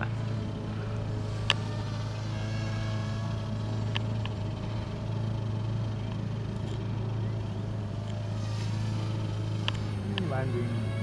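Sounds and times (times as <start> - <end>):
drone propellers buzzing: 0.0 - 11.0.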